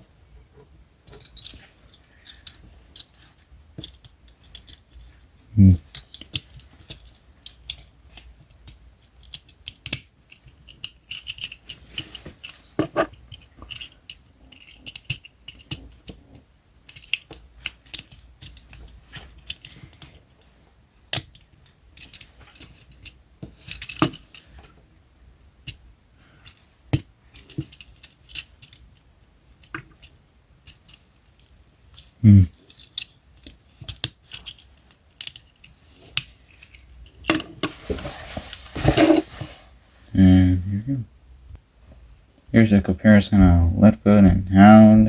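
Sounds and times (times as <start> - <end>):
plastic parts clicking and snapping: 1.0 - 5.0, 5.8 - 16.2, 16.9 - 20.5, 21.1 - 24.7, 26.4 - 37.7.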